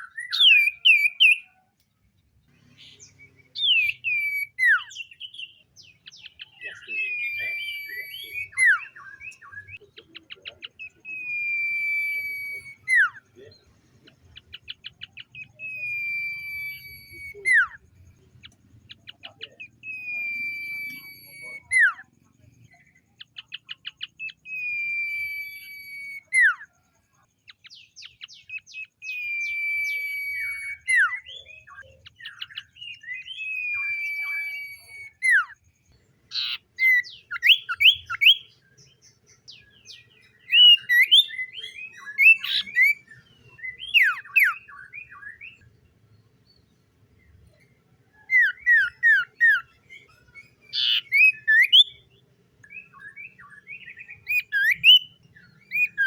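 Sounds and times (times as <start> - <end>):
bird long whistles: 3.6 - 5.3, 6.8 - 9.8, 10.9 - 13.2, 15.1 - 17.8, 19.8 - 22.0, 24.2 - 26.6, 28.3 - 35.6, 39.9 - 43.0.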